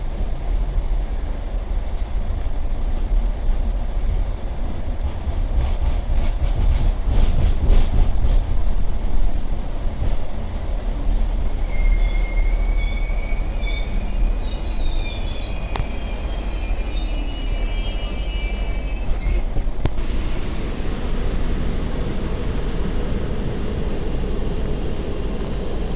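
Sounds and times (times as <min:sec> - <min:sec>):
train rumbling: 0:00.0 - 0:25.9
train wheels squealing: 0:08.1 - 0:19.8.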